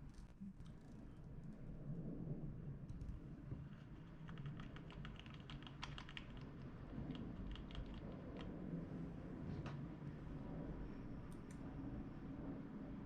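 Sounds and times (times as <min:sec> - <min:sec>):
computer keyboard typing: 0:04.3 - 0:06.4, 0:07.4 - 0:08.1.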